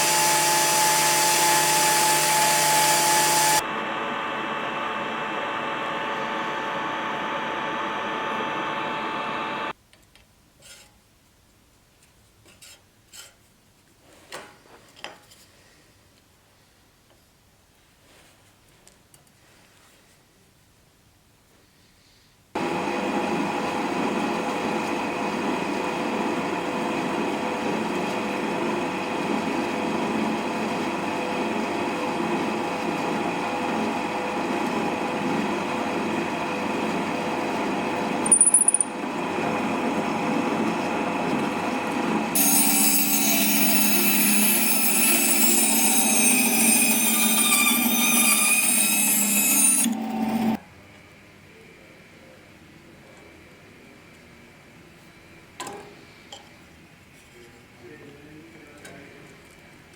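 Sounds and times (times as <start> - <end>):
power tool running: 0.0 - 9.7, 42.2 - 50.6.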